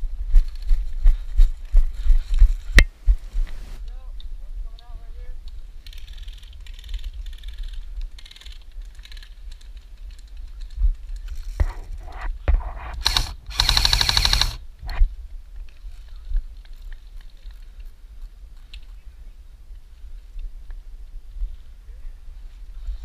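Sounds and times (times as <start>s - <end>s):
airsoft rifle bursts: 13.0s - 14.6s
sharp clicks: 13.0s - 15.0s.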